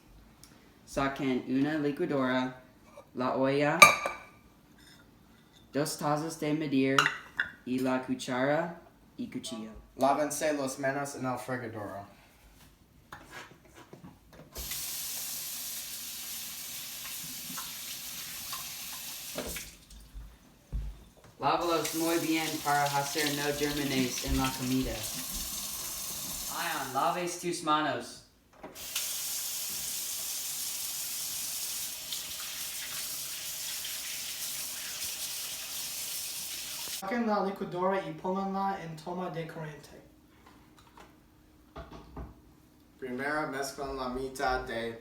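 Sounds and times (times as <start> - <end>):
tap water running: 14.6 - 20.8, 21.6 - 27.2, 28.7 - 37.0
hands washing under water: 21.6 - 27.1
tap running: 21.8 - 26.9.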